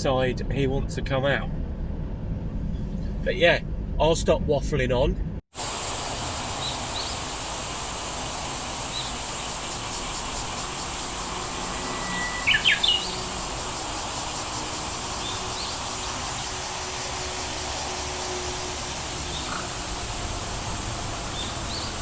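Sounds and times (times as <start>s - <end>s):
outdoor background hiss: 5.5s - 22.0s
songbirds calling: 6.3s - 22.0s
bird whistle and sweeping notes: 6.4s - 7.3s, 8.6s - 20.0s, 21.3s - 22.0s.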